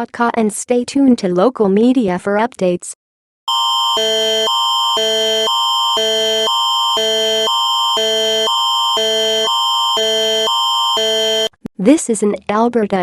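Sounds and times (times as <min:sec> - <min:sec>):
alternating electronic alarm chords: 0:03.5 - 0:11.5
steady high tone: 0:03.5 - 0:11.5.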